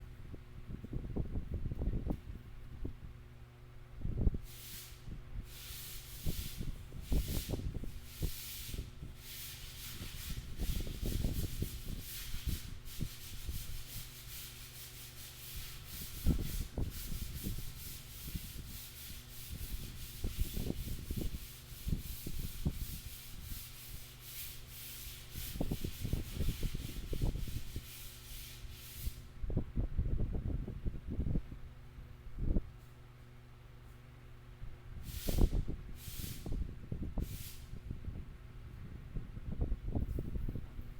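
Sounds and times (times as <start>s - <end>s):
low electrical hum: 0.0s - 40.9s
rubbing and scratching: 5.6s - 29.2s.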